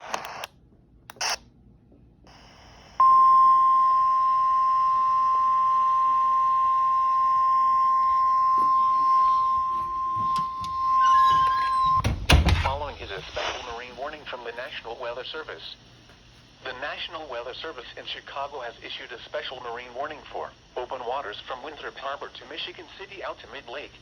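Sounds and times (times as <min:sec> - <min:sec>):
steady loud warning alarm tone: 0:03.0 - 0:13.4.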